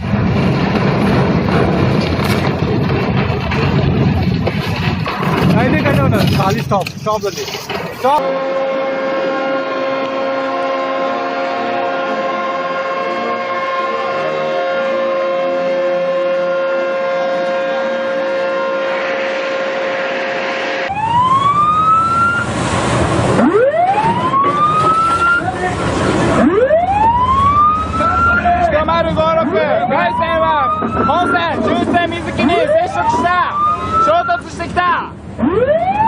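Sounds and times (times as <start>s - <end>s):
emergency vehicle siren: 8.2s - 34.6s, 35.4s - 36.0s.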